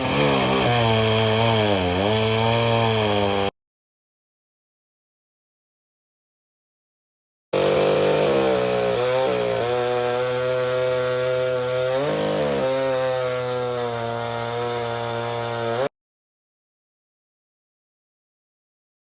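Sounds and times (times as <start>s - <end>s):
chainsaw cutting wood: 0.0s - 3.6s, 7.6s - 15.9s.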